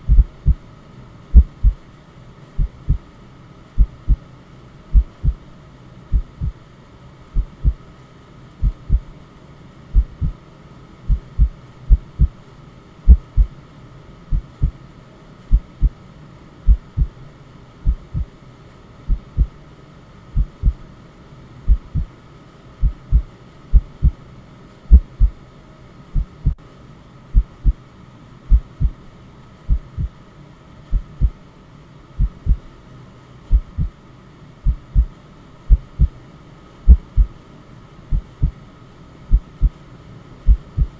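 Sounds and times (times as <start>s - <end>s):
heartbeat thumps: 0.0s - 0.6s, 1.3s - 1.8s, 2.6s - 3.1s, 3.8s - 4.2s, 4.9s - 5.4s, 6.1s - 6.6s, 7.4s - 7.8s, 8.6s - 9.1s, 10.0s - 10.4s, 11.1s - 12.4s, 13.1s - 13.5s, 14.3s - 14.8s, 15.5s - 16.0s, 16.7s - 17.2s, 17.8s - 18.3s, 19.1s - 19.6s, 20.4s - 20.8s, 21.7s - 22.1s, 22.8s - 24.2s, 24.9s - 25.4s, 26.2s - 26.6s, 27.4s - 27.8s, 28.5s - 29.0s, 29.7s - 30.2s, 30.9s - 31.4s, 32.2s - 32.7s, 33.5s - 34.0s, 34.6s - 36.2s, 36.9s - 37.4s, 38.1s - 38.6s, 39.3s - 39.8s, 40.5s - 40.9s
white-noise hiss: 0.0s - 40.9s.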